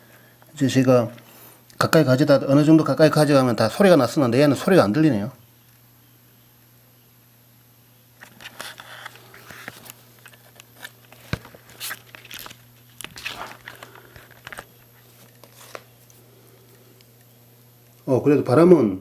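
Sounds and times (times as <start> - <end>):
handling crackles and scrapes: 8.2 - 17.2.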